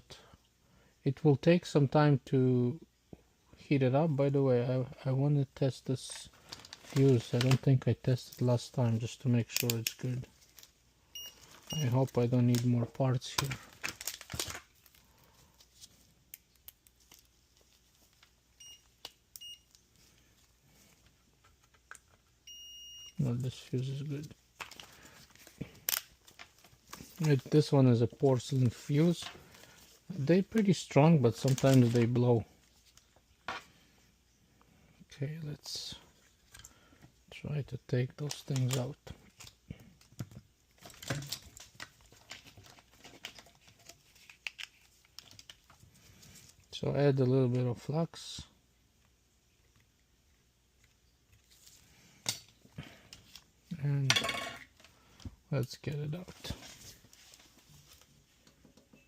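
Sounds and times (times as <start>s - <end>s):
multimeter beeping: 11.1s - 12.0s, 22.4s - 23.2s.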